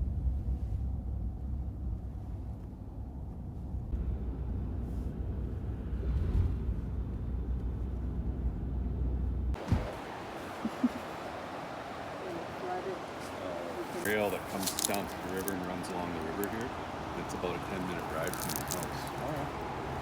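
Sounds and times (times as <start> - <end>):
car road rumble inside cabin: 0.0 - 10.0.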